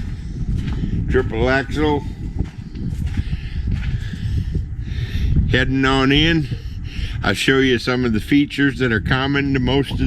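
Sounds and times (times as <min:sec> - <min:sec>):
footsteps on ground: 0:00.0 - 0:06.4
wind rumble on microphone: 0:00.0 - 0:10.0.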